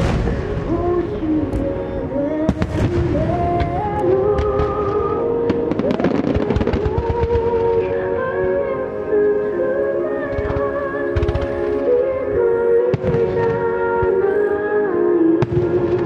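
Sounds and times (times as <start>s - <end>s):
fireworks bangs and crackles: 0.0s - 1.7s, 2.4s - 8.1s, 10.3s - 12.1s, 12.9s - 14.2s, 15.4s - 16.0s
slow melody over loudspeakers: 0.0s - 16.0s.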